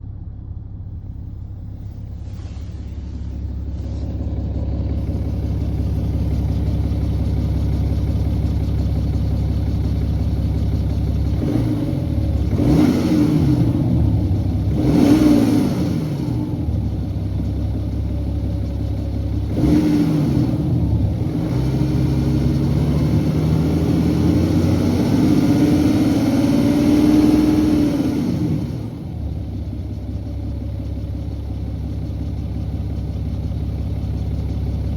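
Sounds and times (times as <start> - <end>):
diesel engine idling and revving: 0.0 - 34.9.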